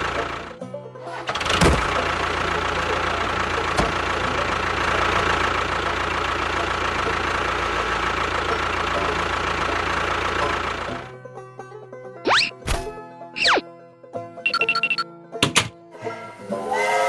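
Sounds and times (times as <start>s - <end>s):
engine running steadily: 0.0s - 11.2s
short knock: 1.6s - 2.0s.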